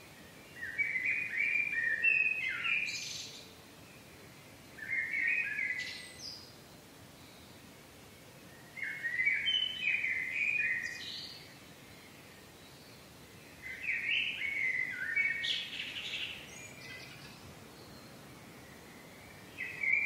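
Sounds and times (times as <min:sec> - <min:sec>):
outdoor ambience: 0:00.0 - 0:20.0
songbird whistled notes: 0:00.5 - 0:03.3, 0:04.8 - 0:06.4, 0:08.7 - 0:11.5, 0:18.8 - 0:20.0.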